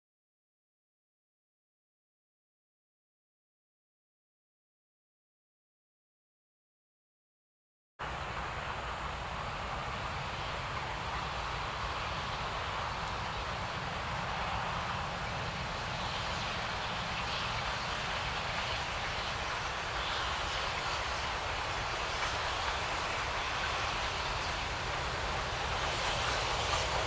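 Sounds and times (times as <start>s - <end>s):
distant train rumble: 8.0s - 27.0s.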